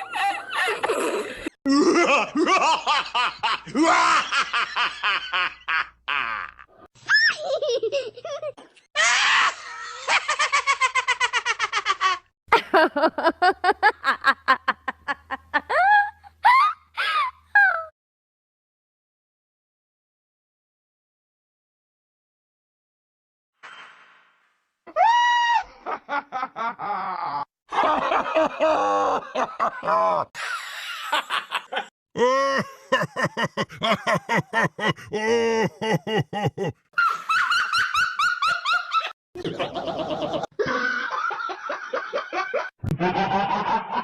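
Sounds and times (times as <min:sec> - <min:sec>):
laugh sound effects: 0:00.0 - 0:05.5, 0:25.8 - 0:44.0.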